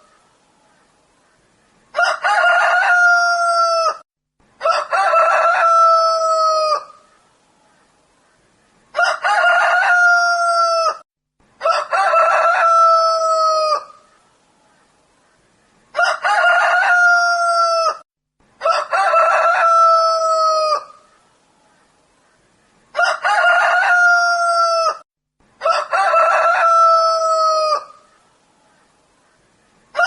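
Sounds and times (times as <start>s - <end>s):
rooster crowing: 1.9s - 4.0s, 4.6s - 7.0s, 9.0s - 11.0s, 11.6s - 14.0s, 15.9s - 18.0s, 18.6s - 21.0s, 23.0s - 25.0s, 25.6s - 28.0s.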